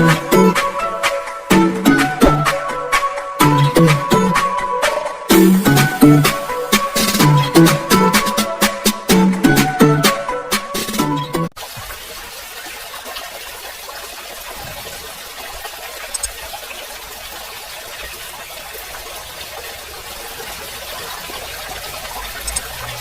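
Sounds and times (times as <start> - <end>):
water running in thin stream: 5.3 - 7.6, 11.4 - 23.0.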